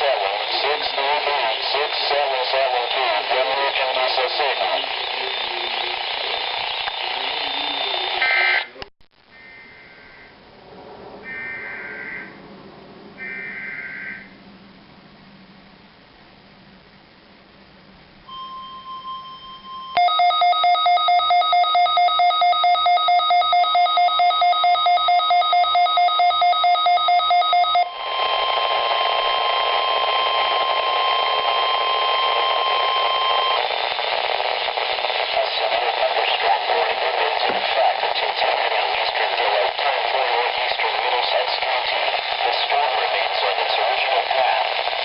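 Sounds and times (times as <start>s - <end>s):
radio static hiss: 0.0s - 10.5s, 23.6s - 45.0s
steady electronic alarm tone: 4.9s - 8.7s, 11.2s - 12.3s, 13.2s - 14.4s, 18.3s - 33.6s.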